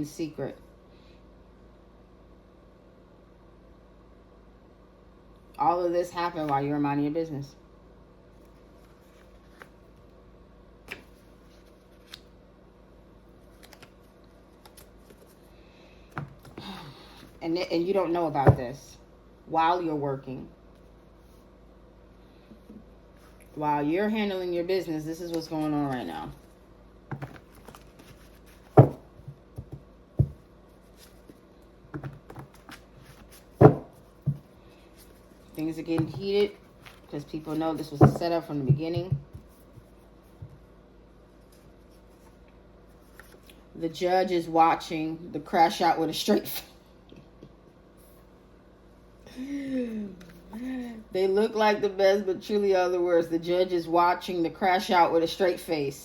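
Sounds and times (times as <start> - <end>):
faint room hum: 0.0 - 56.0
sharp knocks on a hard surface: 33.6 - 34.4.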